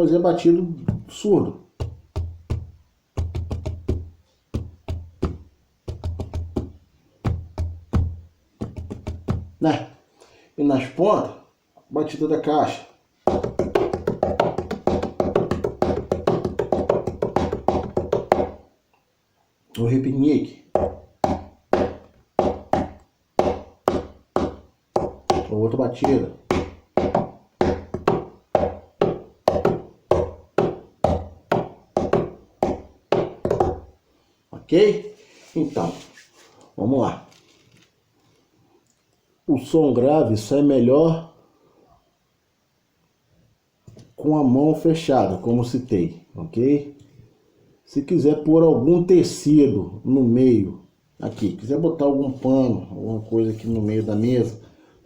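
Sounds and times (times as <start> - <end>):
hands drumming on wooden table: 1.8 - 9.6, 13.3 - 18.6, 20.8 - 33.9.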